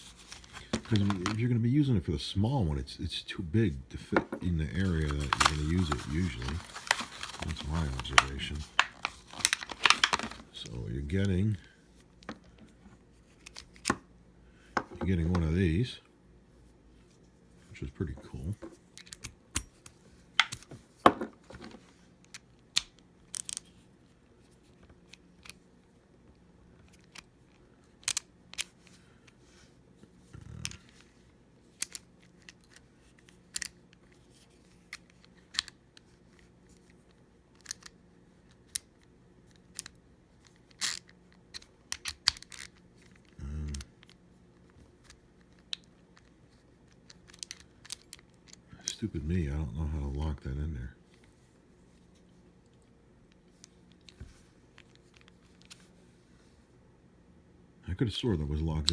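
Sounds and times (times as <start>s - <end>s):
faint steady hum: 0.0s - 58.9s
tool parts clicking and rattling: 0.1s - 1.4s, 4.1s - 10.8s.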